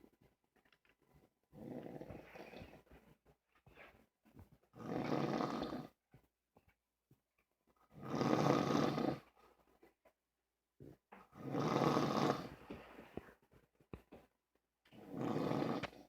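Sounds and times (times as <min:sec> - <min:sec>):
loud snoring: 0:01.6 - 0:02.7, 0:04.8 - 0:06.0, 0:08.0 - 0:09.3, 0:11.3 - 0:12.6, 0:15.0 - 0:16.0.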